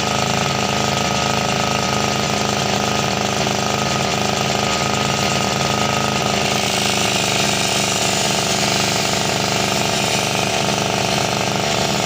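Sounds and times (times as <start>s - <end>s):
electric grinder grinding a blade: 0.0s - 12.0s.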